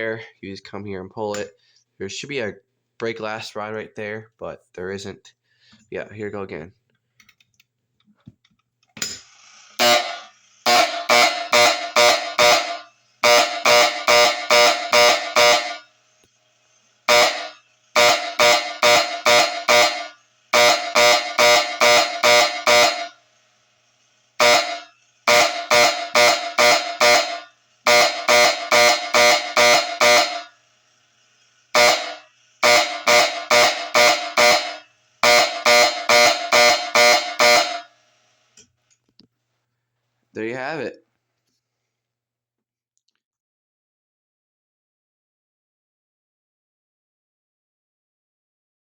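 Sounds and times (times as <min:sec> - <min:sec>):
buzzing fire alarm horn: 0:09.8 - 0:16.0, 0:17.0 - 0:23.3, 0:24.4 - 0:30.6, 0:31.7 - 0:38.2.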